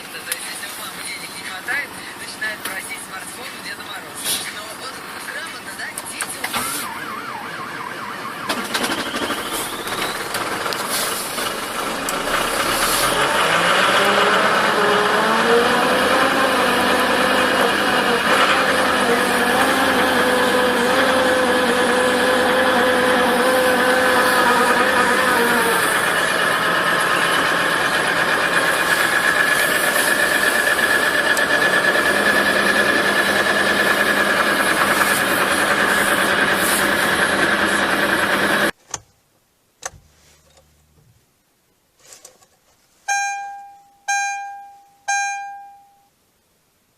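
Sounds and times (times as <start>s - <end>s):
diesel engine starting and running: 0.0s - 38.8s
steady high whine: 16.4s - 38.7s.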